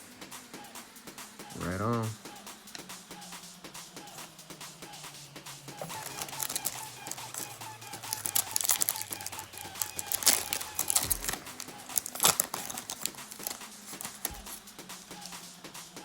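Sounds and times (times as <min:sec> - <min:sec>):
foil wrapper crinkling and tearing: 0:05.8 - 0:15.4.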